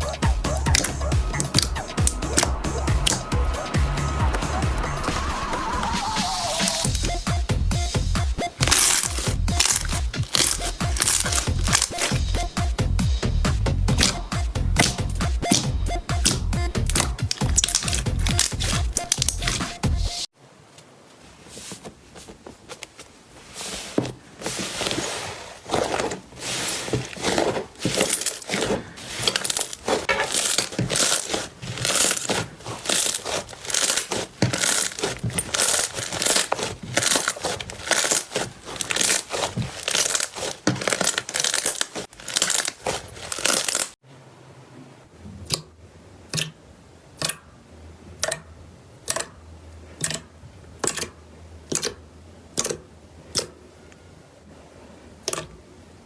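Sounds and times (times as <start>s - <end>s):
slime squeezed by hand crackling: 0.0s - 12.5s, 13.9s - 19.8s, 27.2s - 44.0s.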